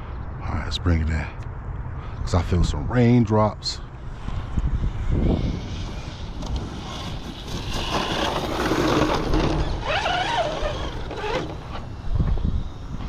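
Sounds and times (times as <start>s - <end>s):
electric motor whining: 4.9s - 13.0s.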